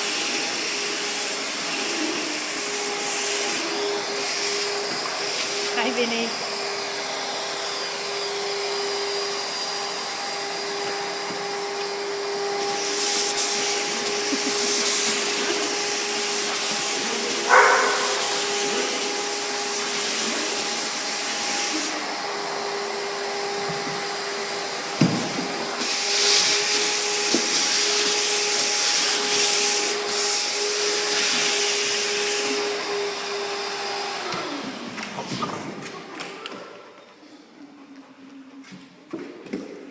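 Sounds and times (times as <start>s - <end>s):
electric motor humming: 0.9s - 25.0s.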